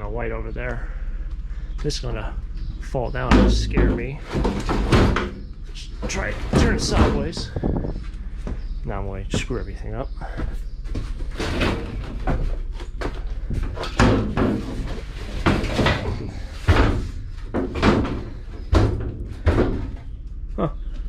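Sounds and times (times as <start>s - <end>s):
heavy scrap metal thumping: 3.2s - 7.9s, 11.3s - 20.0s.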